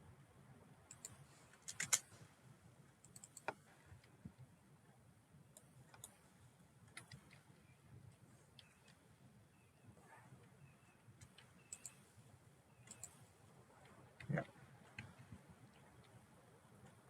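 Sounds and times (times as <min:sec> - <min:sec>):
mouse and keyboard clicks: 0:00.9 - 0:02.1, 0:03.0 - 0:03.6, 0:05.6 - 0:06.2, 0:06.9 - 0:07.5, 0:11.2 - 0:12.0, 0:12.8 - 0:13.2.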